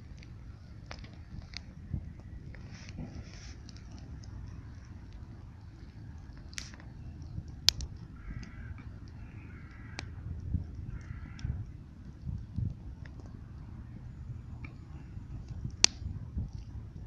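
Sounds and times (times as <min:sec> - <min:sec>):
sharp cracks: 0:00.0 - 0:13.4, 0:15.5 - 0:16.7
steady low rumble: 0:00.0 - 0:17.0
crow cawing: 0:08.2 - 0:10.2, 0:10.8 - 0:11.6.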